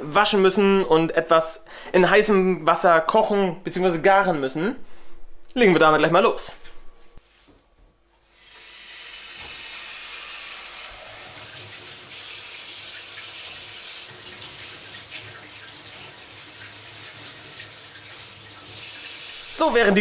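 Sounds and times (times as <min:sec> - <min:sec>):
tap water running into sink: 0:08.4 - 0:20.0.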